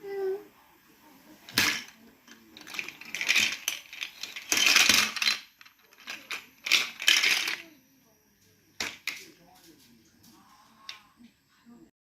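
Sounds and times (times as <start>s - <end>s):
small hard objects clattering: 1.5s - 7.7s.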